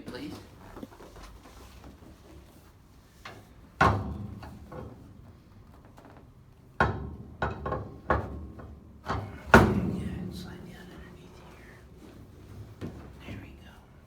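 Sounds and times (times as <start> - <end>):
treatment table clunks: 6.8 - 10.3.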